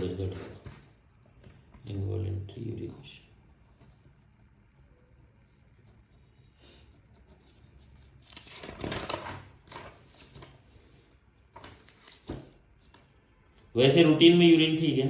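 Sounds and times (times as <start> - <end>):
rustling and handling noises: 0.0 - 1.8, 7.3 - 13.7.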